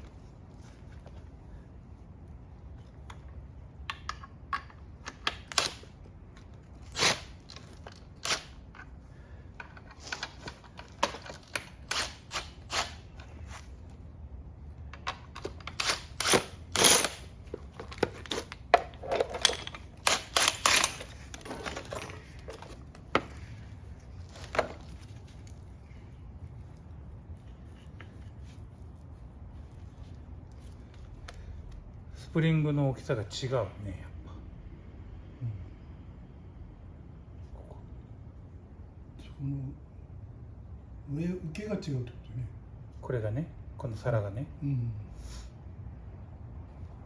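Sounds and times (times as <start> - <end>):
metal parts clicking and knocking: 3.0 - 5.9, 6.9 - 13.4, 14.9 - 23.4.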